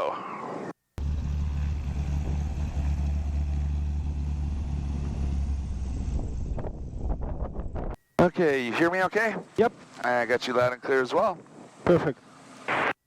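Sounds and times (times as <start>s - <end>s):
airplane piston engine drone: 1.0s - 7.5s.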